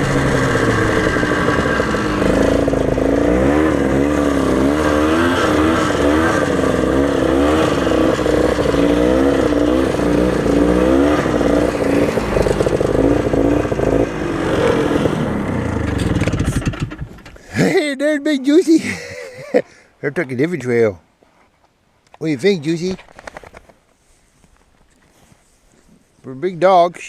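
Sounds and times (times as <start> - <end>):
snowmobile two-stroke engine: 0.0 - 17.7.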